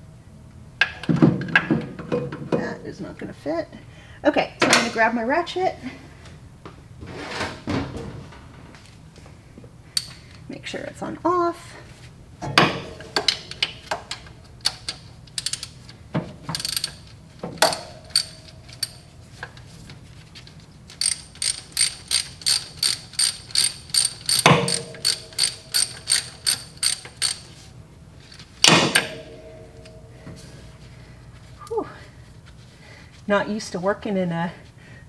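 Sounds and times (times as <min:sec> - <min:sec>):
ratchet clicking: 0:10.0 - 0:10.2, 0:14.6 - 0:19.0, 0:20.9 - 0:27.7
metallic clanks: 0:14.7 - 0:15.8, 0:16.4 - 0:19.0, 0:21.0 - 0:27.6.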